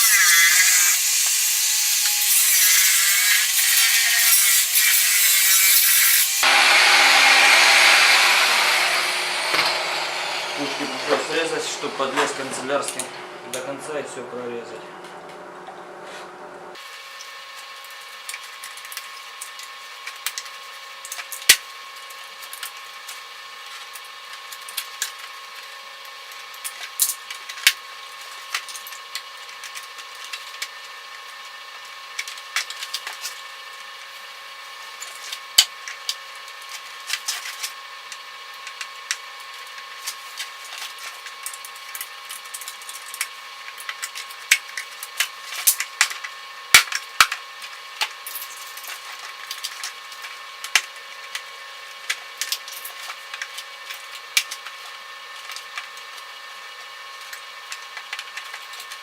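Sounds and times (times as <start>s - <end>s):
steady hum: 6.4s - 16.8s.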